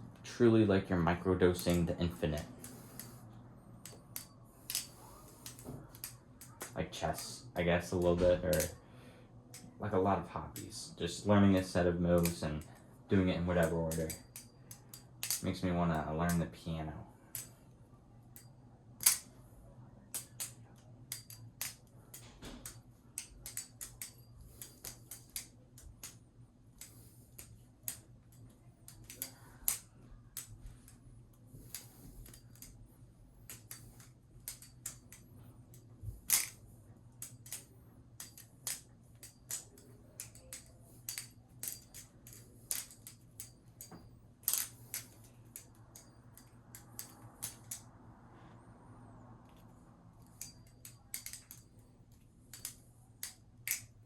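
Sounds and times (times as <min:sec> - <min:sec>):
butterfly knife metallic clicks: 0:03.8 - 0:08.8, 0:13.6 - 0:15.6, 0:18.3 - 0:19.4, 0:20.1 - 0:26.2, 0:26.8 - 0:31.0, 0:31.6 - 0:32.8, 0:33.4 - 0:36.6, 0:37.2 - 0:47.9, 0:50.2 - 0:51.8, 0:52.5 - 0:54.0.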